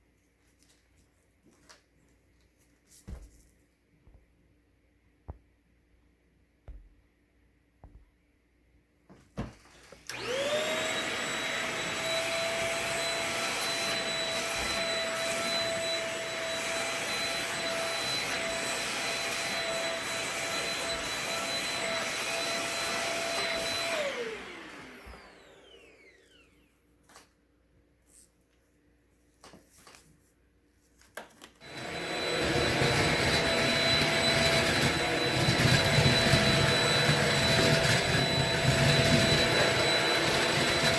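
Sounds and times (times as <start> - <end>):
stick vacuum motor whining: 9.8 - 26.7, 31.6 - 40.9.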